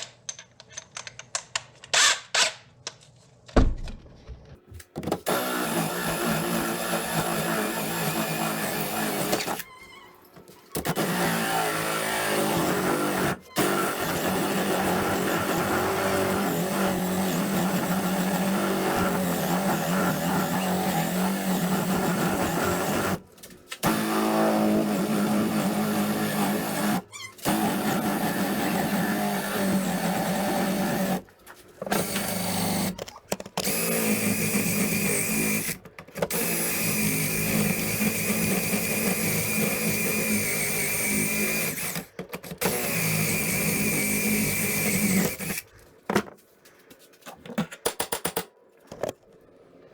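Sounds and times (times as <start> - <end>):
electric drill running: 5.3 - 9.6, 10.8 - 23.2, 23.8 - 31.2, 33.6 - 45.6.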